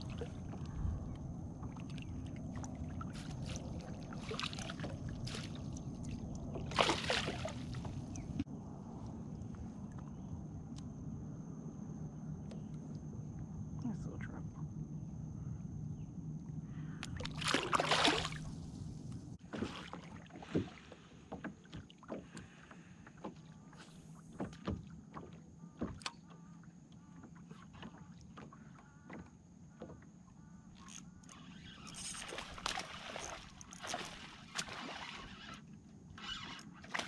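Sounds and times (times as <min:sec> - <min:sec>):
water splashing: 0:00.0 - 0:08.4, 0:17.2 - 0:18.6, 0:19.4 - 0:22.0, 0:31.5 - 0:35.6, 0:36.2 - 0:37.0.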